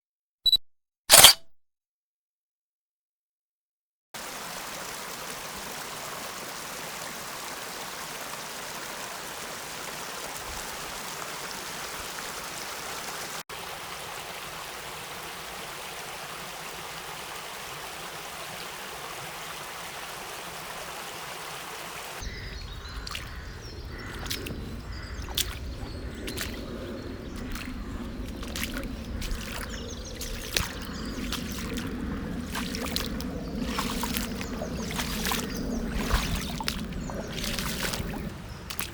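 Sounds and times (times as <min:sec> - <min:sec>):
low rumble: 0:22.2 - 0:38.9
river rushing: 0:27.3 - 0:38.9.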